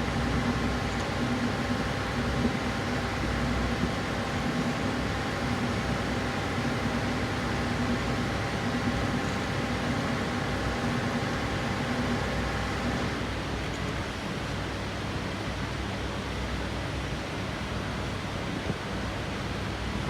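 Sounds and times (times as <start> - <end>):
faint steady whine: 0.0 - 13.8.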